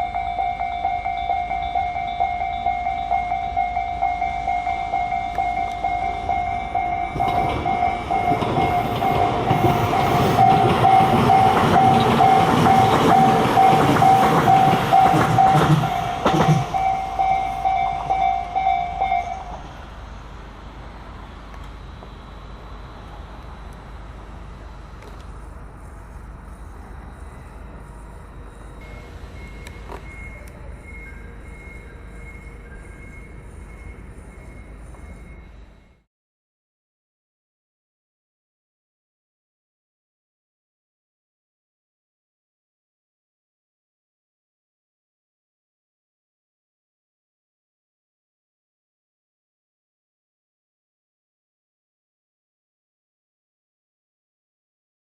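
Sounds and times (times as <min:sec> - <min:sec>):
level crossing bell ringing: 0:00.0 - 0:09.3, 0:10.0 - 0:19.5, 0:28.8 - 0:36.0
train wheels clicking over rail joints: 0:05.0 - 0:19.7.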